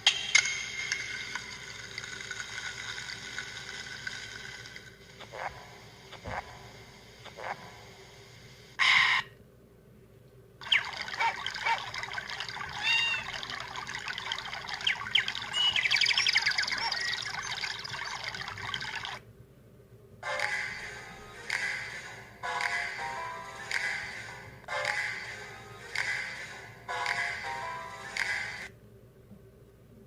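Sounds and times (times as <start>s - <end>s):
birds chirping ringtone: 10.6s - 19.2s
trickling water ringtone: 10.6s - 19.2s.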